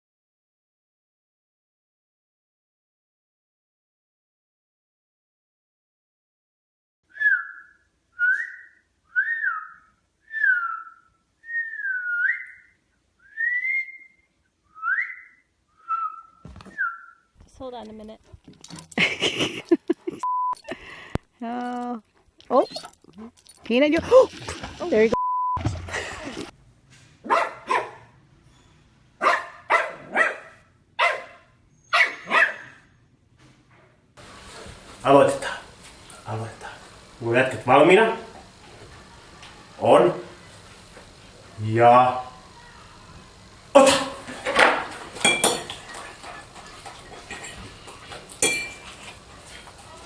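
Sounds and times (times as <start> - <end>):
dog barking: 27.2 - 28.2, 29.2 - 32.8.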